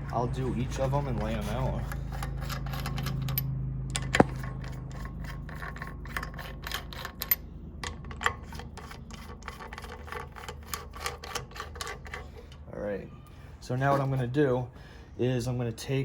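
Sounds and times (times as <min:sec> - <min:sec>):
small metal parts clicking: 0:01.8 - 0:12.6.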